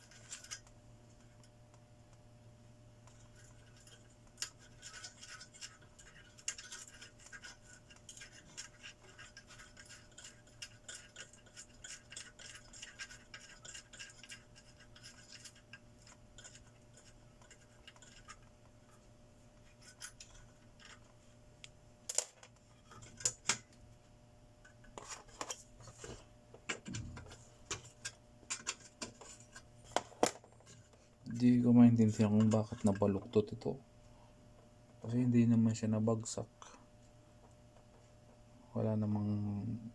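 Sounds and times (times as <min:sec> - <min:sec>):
fast steady scratching: 0:00.0 - 0:01.4, 0:03.1 - 0:19.0, 0:30.6 - 0:33.8.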